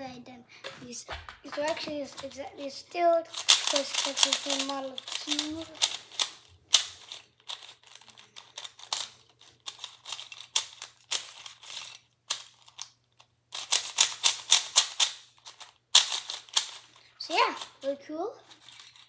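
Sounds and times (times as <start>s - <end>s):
plastic cubes clicking: 3.3s - 12.9s, 13.6s - 17.8s.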